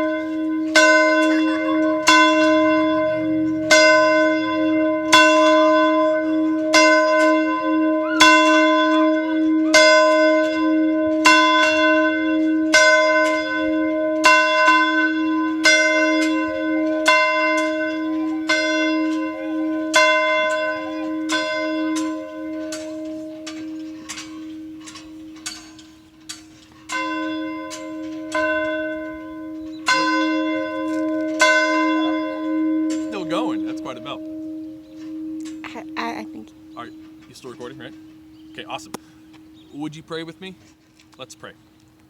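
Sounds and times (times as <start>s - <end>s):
low hum ringing: 0.0s - 8.1s, 19.2s - 41.0s
church bell striking: 0.0s - 40.8s.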